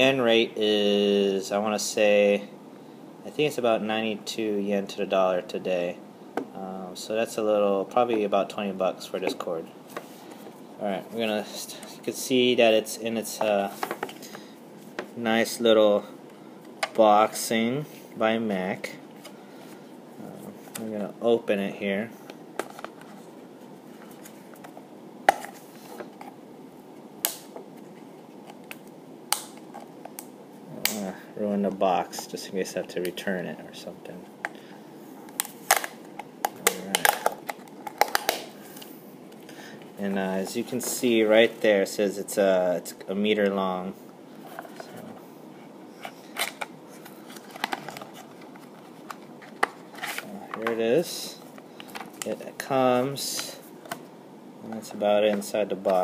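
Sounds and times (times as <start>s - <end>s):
cardboard packaging snapping: 35.3s - 38.5s.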